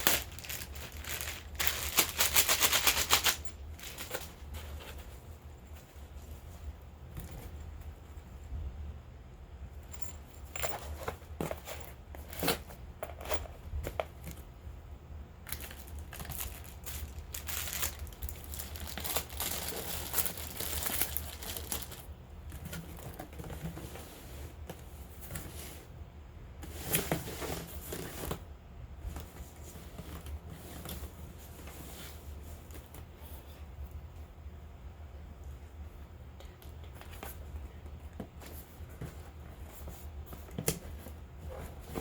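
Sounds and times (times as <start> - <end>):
packaging crinkling and rustling: 0.0 - 5.3, 15.4 - 24.0.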